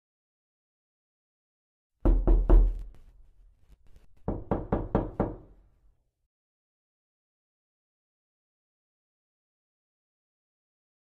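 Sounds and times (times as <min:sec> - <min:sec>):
knocking on a door: 0:02.0 - 0:02.9, 0:04.2 - 0:05.6.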